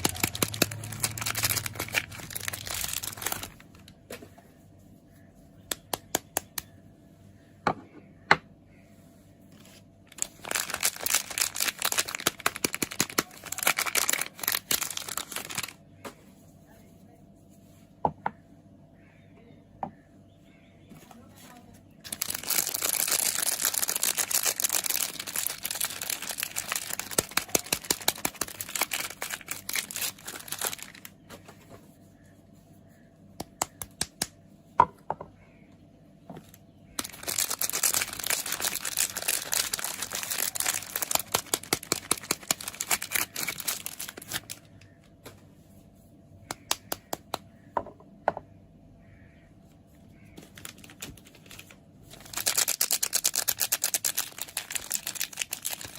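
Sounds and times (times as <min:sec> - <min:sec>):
packaging crinkling: 0:00.0 - 0:04.1, 0:09.5 - 0:15.8, 0:22.0 - 0:31.6, 0:37.0 - 0:45.2, 0:50.3 - 0:55.9.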